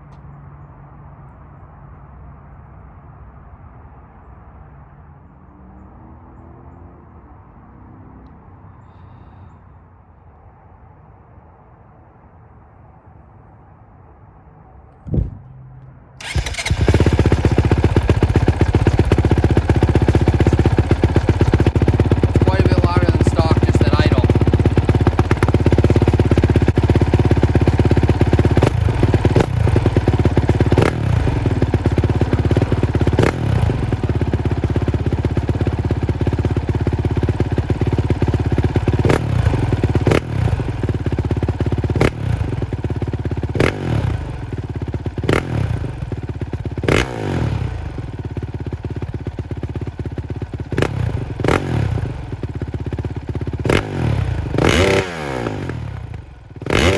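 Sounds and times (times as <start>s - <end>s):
motocross engine idling and revving: 16.2s - 56.9s.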